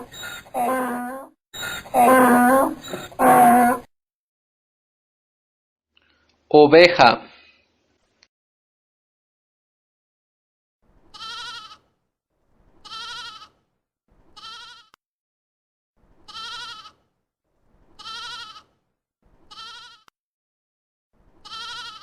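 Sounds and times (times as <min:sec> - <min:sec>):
sheep bleating: 0:00.0 - 0:01.2, 0:01.9 - 0:03.9, 0:11.1 - 0:11.8, 0:12.8 - 0:13.6, 0:14.4 - 0:15.0, 0:16.3 - 0:17.0, 0:18.0 - 0:18.7, 0:19.5 - 0:20.1, 0:21.4 - 0:22.0.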